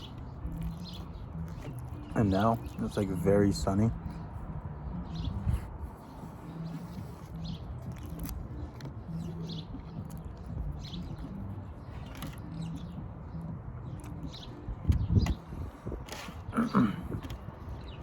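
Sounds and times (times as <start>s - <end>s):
bird chirping: 0.0s - 15.9s.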